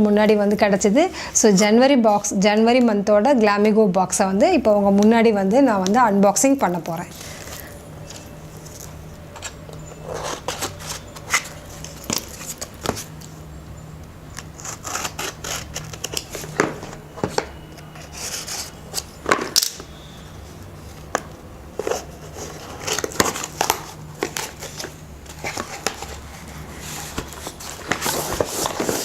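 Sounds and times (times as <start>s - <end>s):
packaging ripping and crinkling: 10.0s - 13.1s, 14.4s - 17.0s, 21.8s - 29.0s.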